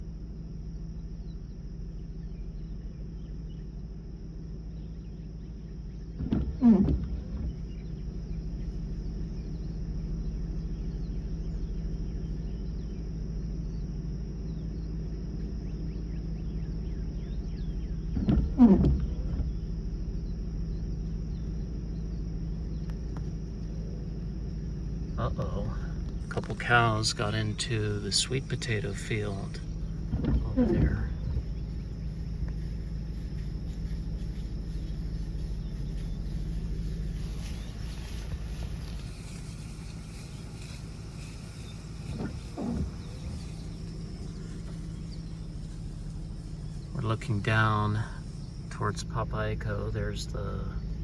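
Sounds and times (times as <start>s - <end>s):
steady low hum: 0.0s - 51.0s
cattle mooing: 38.2s - 46.1s.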